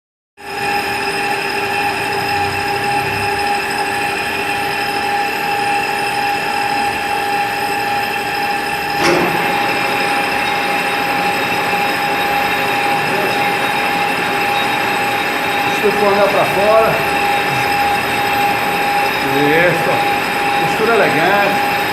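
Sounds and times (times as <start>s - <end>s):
sharpening disc whining: 4.6s - 21.9s.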